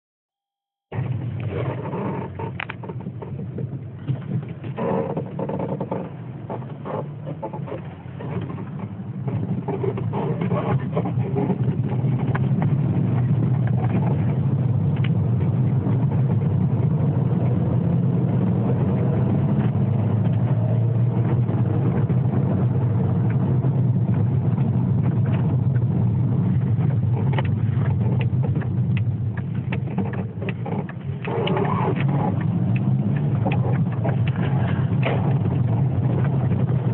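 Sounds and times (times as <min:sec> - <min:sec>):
car engine running: 0:00.9 - 0:36.9
short creaks and clicks: 0:01.4 - 0:12.5, 0:27.2 - 0:35.7.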